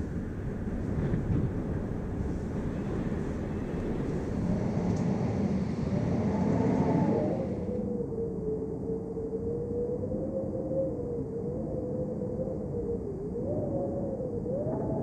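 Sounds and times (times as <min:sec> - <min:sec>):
wind gusting: 0:00.0 - 0:08.2
wind whistling: 0:00.0 - 0:15.0.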